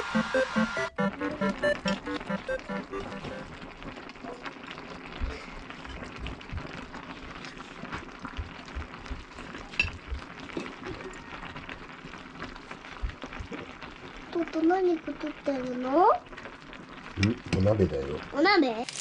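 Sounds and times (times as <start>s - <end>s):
pot crackling and sizzling over fire: 0.0s - 19.0s
soft low thumps: 6.0s - 7.1s, 7.9s - 10.4s, 13.0s - 13.6s.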